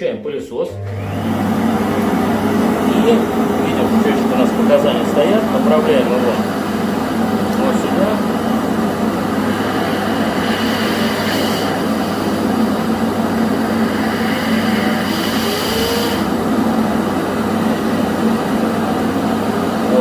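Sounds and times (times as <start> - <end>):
vacuum cleaner running: 0.6 - 20.0
air hissing through hose: 9.1 - 16.3.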